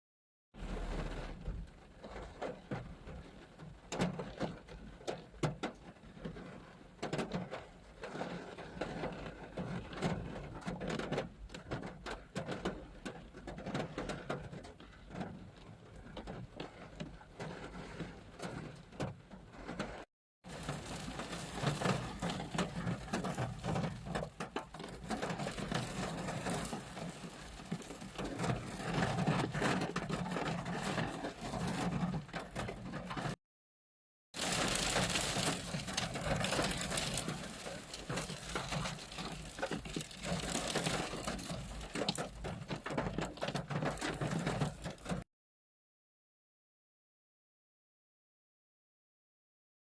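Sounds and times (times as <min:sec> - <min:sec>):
rain and hail on car roof: 0:00.6 - 0:15.3, 0:20.4 - 0:33.4, 0:34.4 - 0:45.2.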